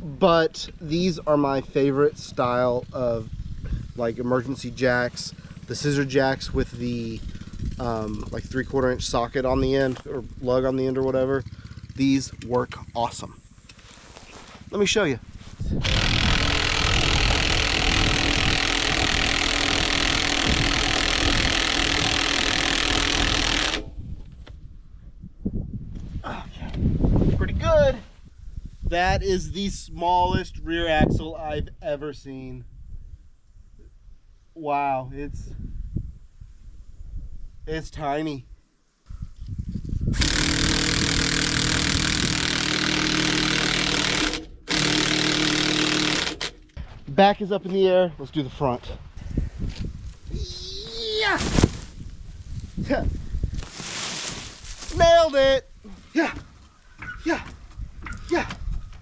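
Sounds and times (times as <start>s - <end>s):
power tool motor running: 15.8s - 24.0s, 40.2s - 46.7s.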